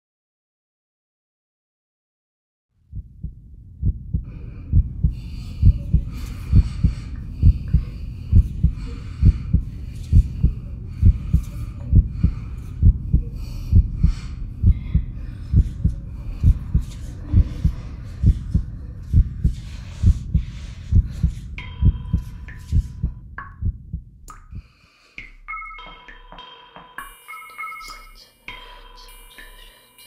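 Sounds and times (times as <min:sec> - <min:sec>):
heartbeat thumps: 0:02.9 - 0:24.7
faint muffled sounds: 0:03.8 - 0:23.7.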